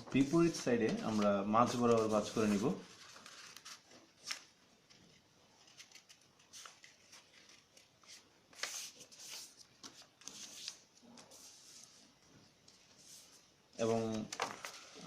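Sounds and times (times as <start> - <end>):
paper rustling and crackling: 0.1 - 12.0, 12.6 - 15.0.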